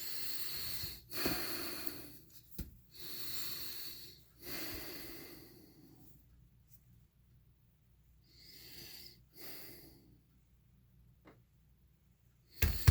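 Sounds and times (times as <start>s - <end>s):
person breathing heavily: 0.0s - 2.3s, 2.9s - 6.1s.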